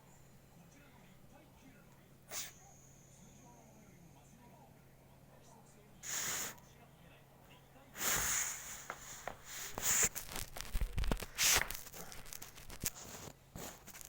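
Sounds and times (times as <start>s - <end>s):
short hissing bursts: 2.3s - 2.6s, 6.0s - 6.6s, 8.0s - 10.3s, 11.3s - 11.9s.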